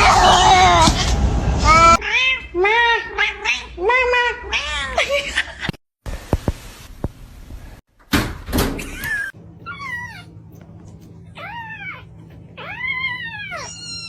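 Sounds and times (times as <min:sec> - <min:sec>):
loud rushing noise: 0:00.0 - 0:02.0
cat meowing: 0:09.0 - 0:10.3, 0:11.4 - 0:14.0.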